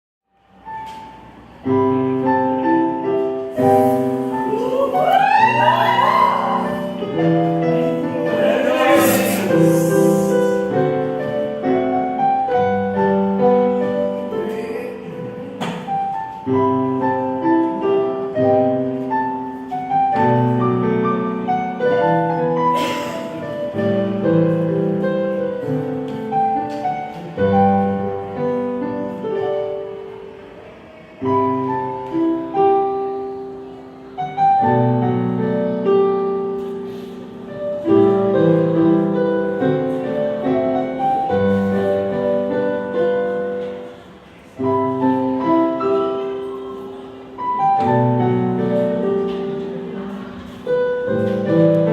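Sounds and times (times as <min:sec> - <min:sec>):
piano melody over chords: 0:00.3 - 0:51.9.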